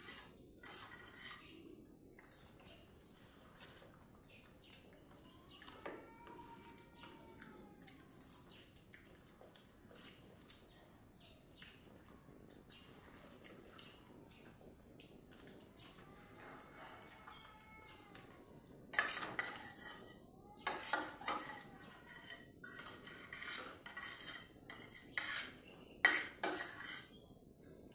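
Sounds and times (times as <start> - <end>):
cutlery clinking on a dish: 18.9 - 27.2.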